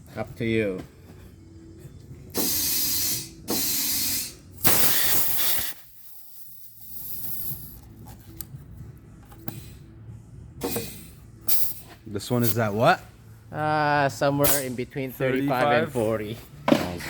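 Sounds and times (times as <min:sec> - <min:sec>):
compressed air hissing through valve: 0:02.3 - 0:07.8, 0:10.6 - 0:11.9.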